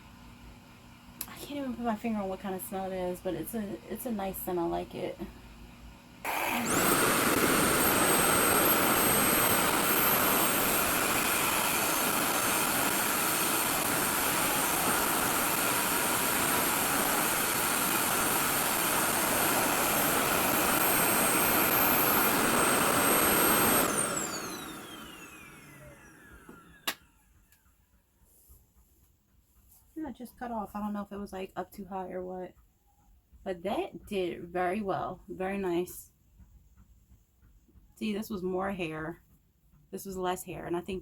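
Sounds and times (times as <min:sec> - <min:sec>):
hair dryer running: 0:06.0 - 0:27.2.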